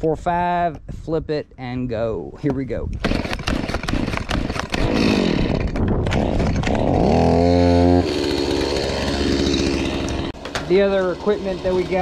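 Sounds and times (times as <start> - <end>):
chainsaw engine revving: 3.0 - 12.0.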